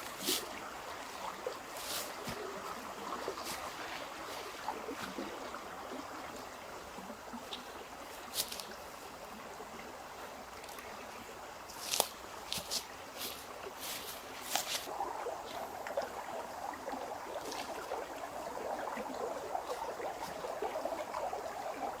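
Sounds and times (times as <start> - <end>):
running water: 0.0 - 22.0
water splashes: 0.0 - 22.0.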